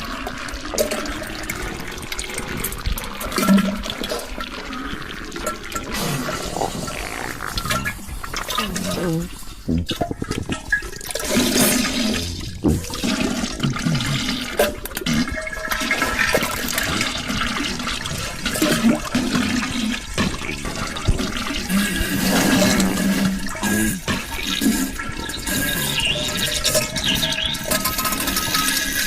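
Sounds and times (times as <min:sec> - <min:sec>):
toilet flushing: 0:00.0 - 0:29.0.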